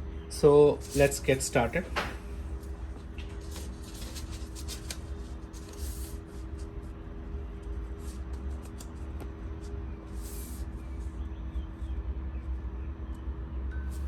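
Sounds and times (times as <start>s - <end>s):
steady low hum: 0.0s - 14.0s
paper and tape rustling: 0.8s - 6.8s, 7.5s - 10.7s.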